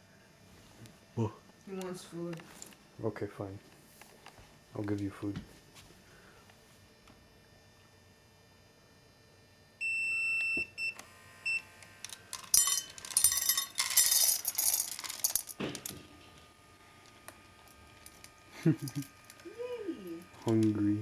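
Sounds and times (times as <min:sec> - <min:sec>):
dry cat food rattling into bowl: 0:12.1 - 0:16.1.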